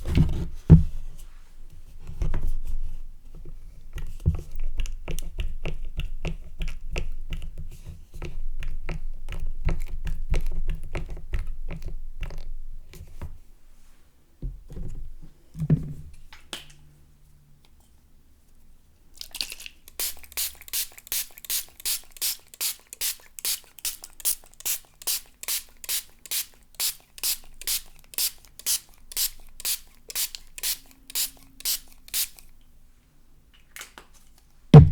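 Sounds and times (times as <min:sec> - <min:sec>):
spray bottle hissing bursts: 0:19.9 - 0:32.5.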